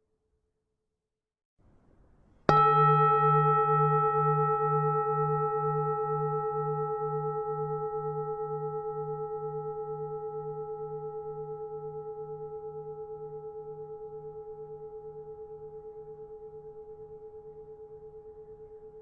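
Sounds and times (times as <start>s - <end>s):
temple bell ringing: 2.5s - 8.9s.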